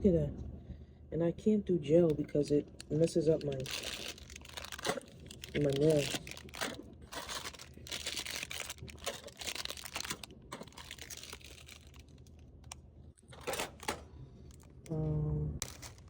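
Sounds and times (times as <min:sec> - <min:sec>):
plastic snack bags crinkling: 0:02.7 - 0:12.8, 0:13.4 - 0:14.9, 0:15.6 - 0:16.0.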